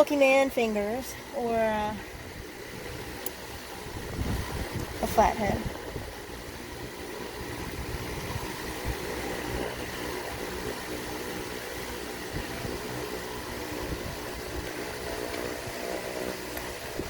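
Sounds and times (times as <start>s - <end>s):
background hum and hiss: 0.0s - 17.0s.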